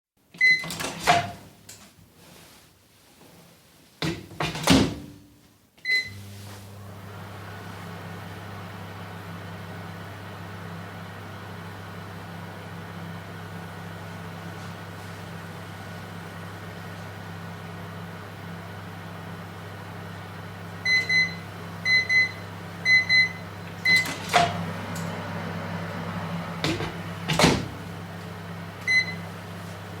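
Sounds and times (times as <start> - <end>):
microwave beeps: 0.4 - 1.3, 5.8 - 6.2, 20.8 - 25.2, 28.8 - 29.4
microwave oven humming: 4.1 - 30.0
microwave door clunking shut: 26.6 - 27.9
keypad beep: 28.8 - 29.2.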